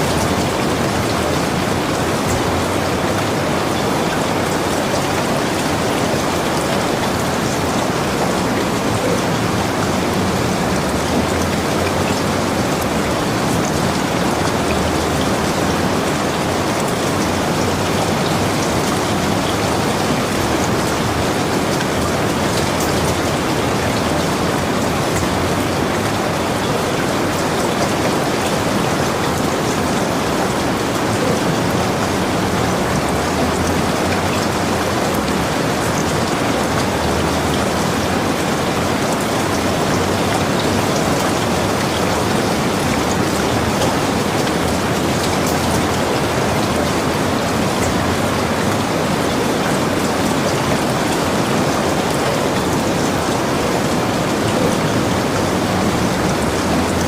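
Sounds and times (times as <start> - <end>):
steady rain hiss: 0.0 - 57.0.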